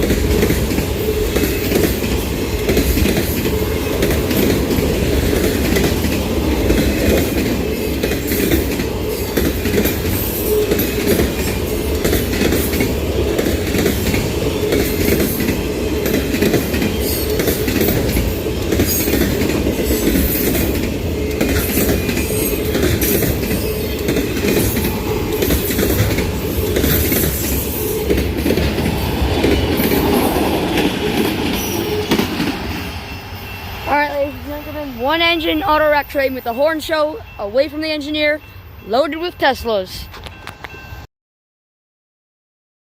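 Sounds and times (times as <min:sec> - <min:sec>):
wheels clicking over rail joints: 0:00.0 - 0:33.1
steel wheels rumbling on rail: 0:00.0 - 0:41.0.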